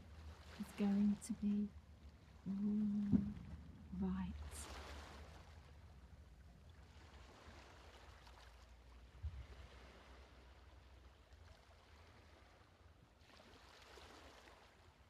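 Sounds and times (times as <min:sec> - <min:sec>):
low hum: 0:00.0 - 0:04.9
soft thump: 0:03.0 - 0:03.6.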